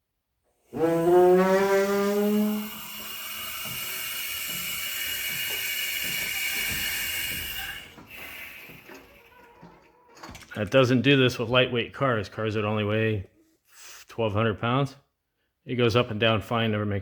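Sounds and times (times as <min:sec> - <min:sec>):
hydraulic ram groaning: 0:00.7 - 0:08.0
hydraulic hiss with high whine: 0:00.7 - 0:09.0.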